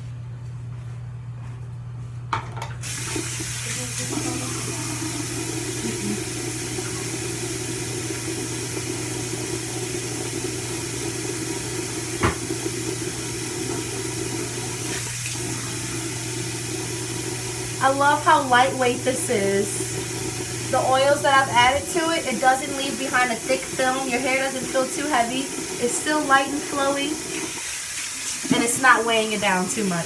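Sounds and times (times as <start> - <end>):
tap water running into sink: 2.8 - 30.0.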